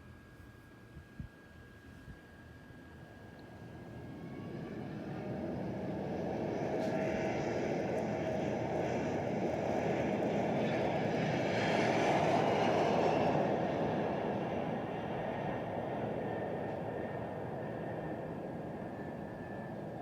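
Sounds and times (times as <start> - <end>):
airplane engine rush: 2.2 - 20.0.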